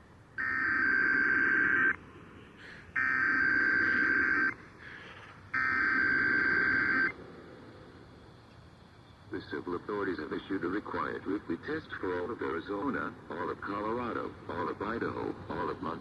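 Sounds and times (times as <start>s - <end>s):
buzzing digital data tones: 5.6s - 7.1s.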